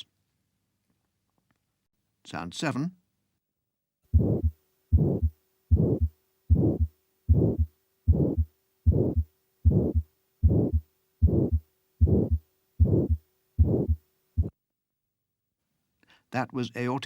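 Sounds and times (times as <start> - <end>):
heartbeat with murmur: 4.1 - 14.6.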